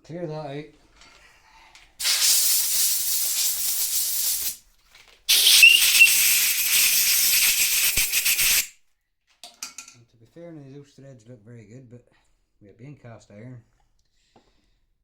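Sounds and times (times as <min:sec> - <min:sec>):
hissing air spray blasts: 0:02.0 - 0:04.6, 0:05.3 - 0:08.7
brief whistle: 0:05.3 - 0:08.7.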